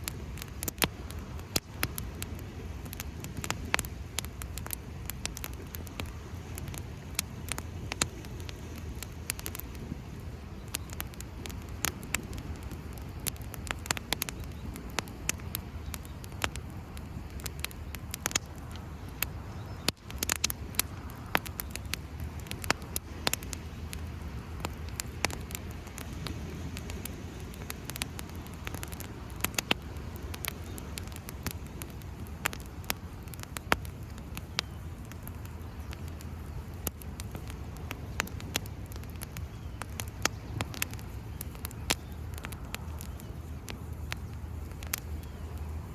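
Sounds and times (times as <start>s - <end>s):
campfire crackling and popping: 0.0s - 45.9s
steady low rush: 4.0s - 45.9s.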